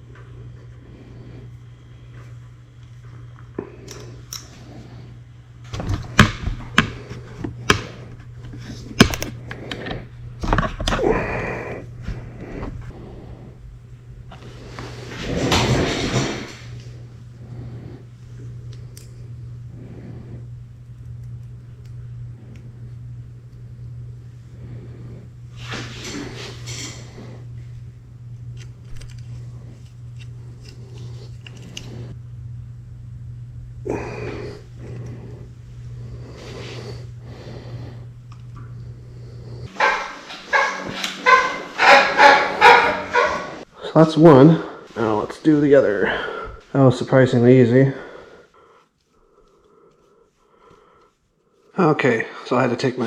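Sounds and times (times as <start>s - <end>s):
steady low hum: 0.0s - 53.0s
rustling and scraping: 14.2s - 17.8s, 24.7s - 27.8s.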